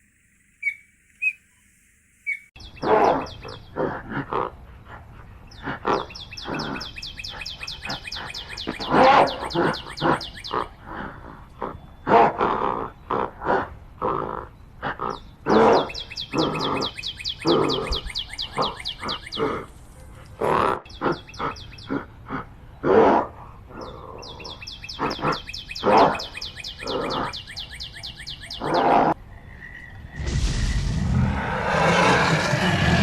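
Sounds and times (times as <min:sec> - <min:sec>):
animal grunting calls: 0:02.8 - 0:27.9, 0:28.5 - 0:29.2, 0:31.2 - 0:33.0
steady rushing noise: 0:30.0 - 0:33.0.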